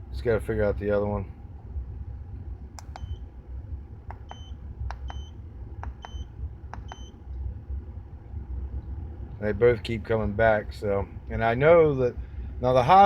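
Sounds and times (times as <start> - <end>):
sharp click: 2.8 - 3.1
short electronic beeps: 6.0 - 7.2.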